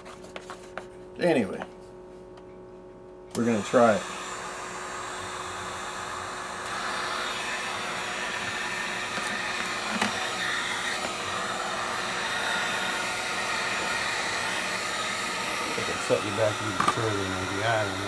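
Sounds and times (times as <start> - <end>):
heat gun blowing: 3.3 - 18.0.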